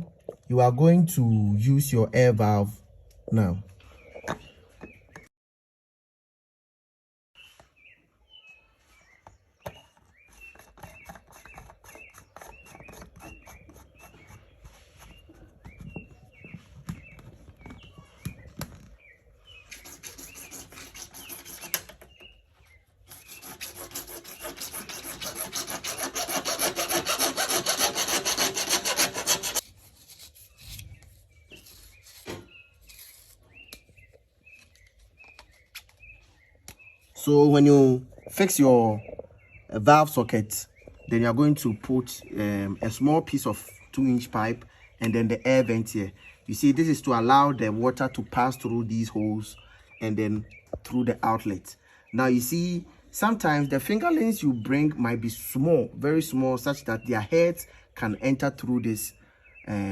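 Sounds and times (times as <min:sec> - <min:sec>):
rasping scrape on plastic pipe: 0:09.7 - 0:16.0, 0:19.7 - 0:22.3, 0:23.0 - 0:30.9.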